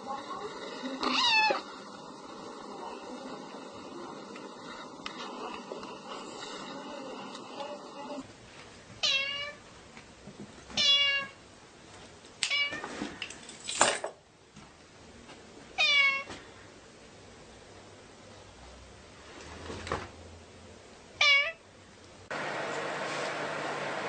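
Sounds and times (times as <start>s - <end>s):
cat meowing: 1.0s - 1.7s, 9.0s - 9.6s, 10.8s - 11.4s, 15.8s - 16.3s, 21.2s - 21.6s.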